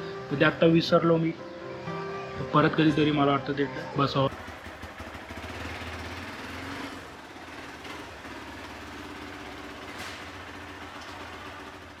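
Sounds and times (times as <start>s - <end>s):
motorcycle engine idling: 4.3s - 12.0s.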